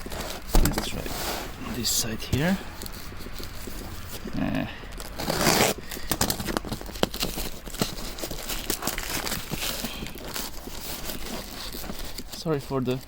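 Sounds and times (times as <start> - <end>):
wrapping rustling and crackling: 0.0 - 13.0
package tearing open: 4.9 - 12.4.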